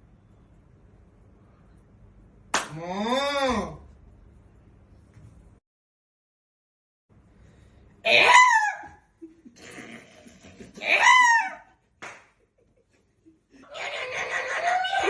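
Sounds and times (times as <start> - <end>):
laughter: 9.2 - 15.0.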